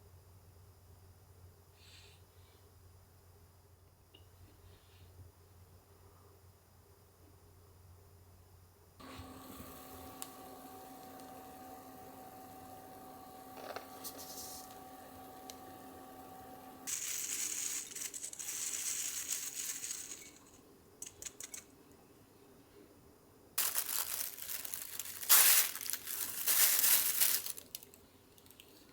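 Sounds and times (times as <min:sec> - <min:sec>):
steady hum: 0:09.0 - 0:18.2
plastic bag crinkling: 0:12.3 - 0:20.6, 0:23.6 - 0:28.9.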